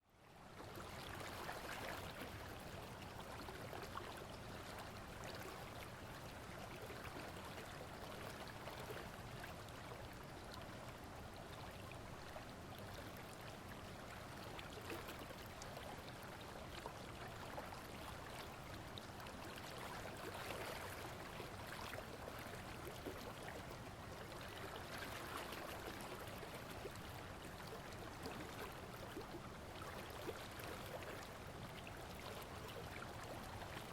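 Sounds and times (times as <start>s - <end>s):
small water splashes: 14.3s - 33.9s.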